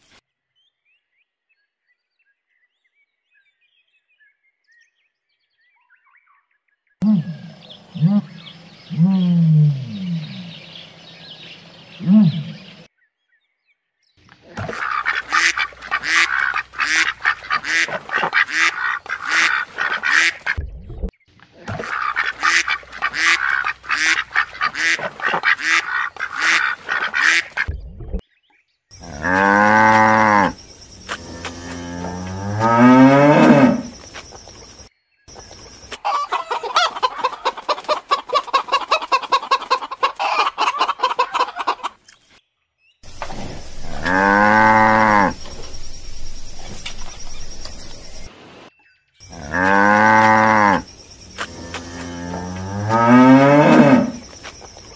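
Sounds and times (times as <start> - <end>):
chickens clucking: 14.4 - 20.6, 21.6 - 27.7, 31.0 - 42.1, 43.1 - 48.3
drawn-out gliding calls: 14.6 - 20.6, 21.7 - 27.7, 43.1 - 48.3
geese honking: 14.6 - 20.6, 21.7 - 27.7.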